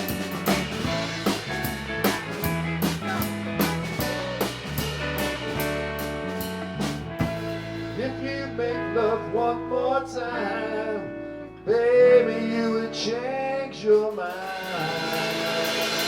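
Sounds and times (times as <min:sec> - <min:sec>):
lead guitar bending notes: 0:00.0 - 0:12.1
band playing country-rock: 0:00.0 - 0:16.0.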